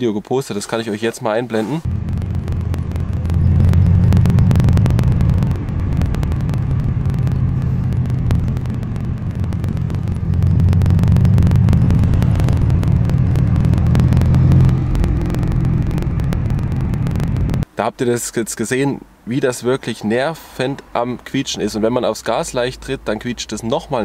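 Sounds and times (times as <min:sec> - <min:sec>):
car engine rumbling: 0:01.8 - 0:17.6
rapid clicks and squeaks: 0:01.9 - 0:17.6.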